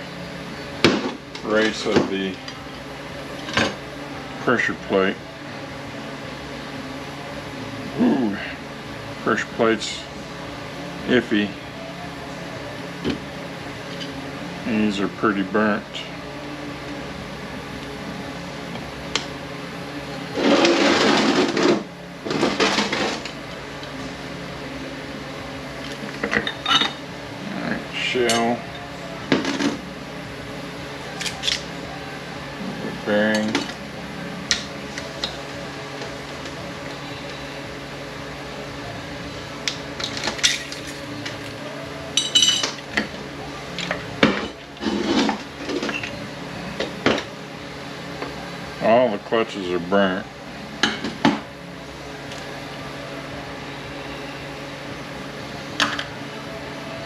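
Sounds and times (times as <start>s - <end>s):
steady shop hum: 0.0s - 57.0s
metal parts scraping and rattling: 20.4s - 23.3s.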